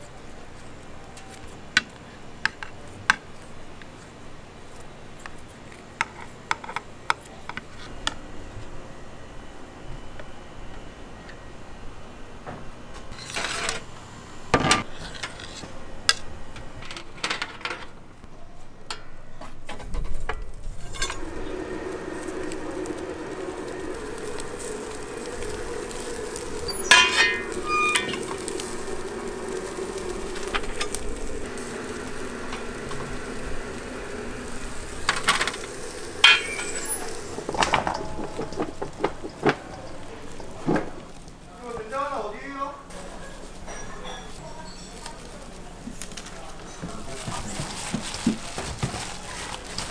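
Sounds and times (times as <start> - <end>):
steady hum: 20.6 - 41.6
food sizzling: 20.6 - 49.9
metal utensils and pans clinking: 20.8 - 41.0, 43.6 - 45.3.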